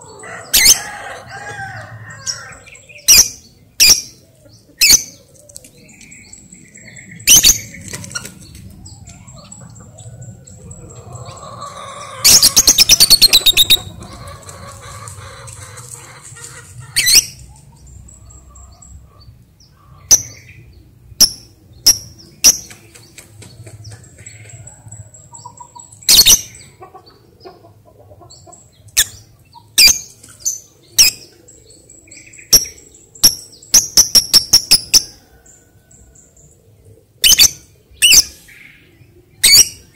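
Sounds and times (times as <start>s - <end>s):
lovebird shrill calls: 12.2s - 13.9s
lovebird chattering: 12.2s - 14.0s.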